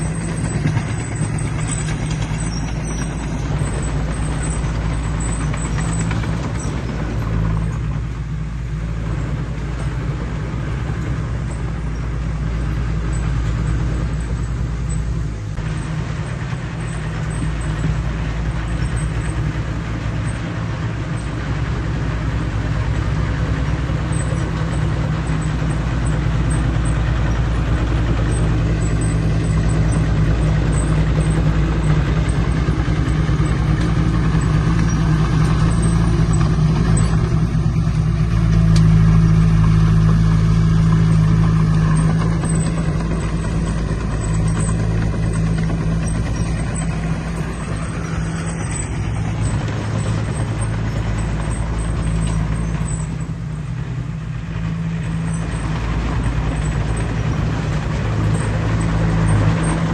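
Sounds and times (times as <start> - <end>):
heavy diesel engine under load: 0.0 - 59.9.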